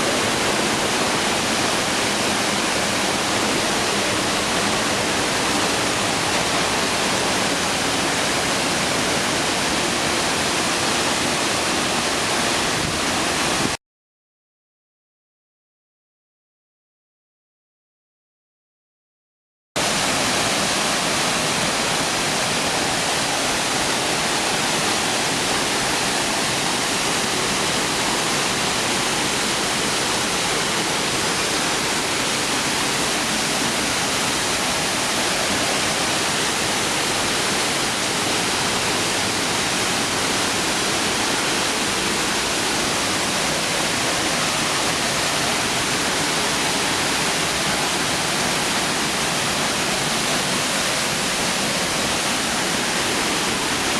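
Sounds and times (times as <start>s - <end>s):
waterfall rushing: 0.0s - 13.8s, 19.8s - 53.9s.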